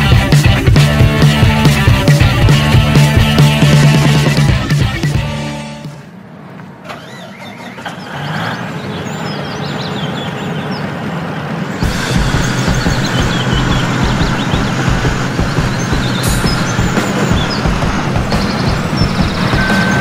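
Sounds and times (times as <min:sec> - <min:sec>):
heavy diesel engine running: 0:00.0 - 0:06.0, 0:07.8 - 0:20.0
birds chirping: 0:06.6 - 0:20.0.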